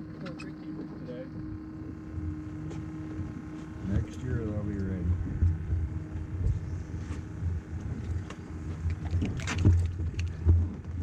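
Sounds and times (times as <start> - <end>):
wind on microphone: 5.0 - 11.0.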